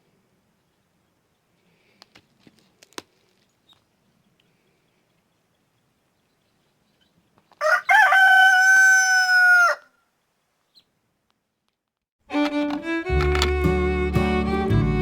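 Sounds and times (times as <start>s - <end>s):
rooster crowing: 7.6s - 10.0s
music: 12.3s - 15.0s.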